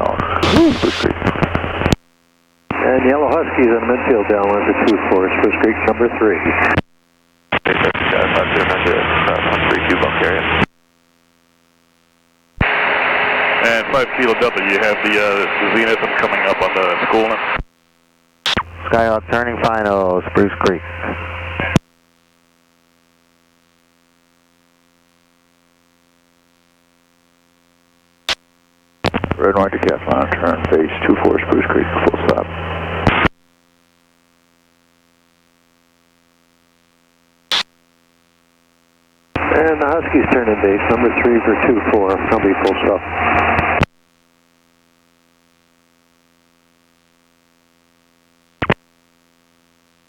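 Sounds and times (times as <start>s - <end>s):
faint intercom hum and hiss: 0.0s - 2.0s, 2.6s - 10.8s, 12.2s - 21.9s, 27.7s - 33.4s, 34.1s - 50.0s
sharp burst of radio noise: 0.1s - 1.2s, 29.4s - 33.3s, 39.4s - 43.8s.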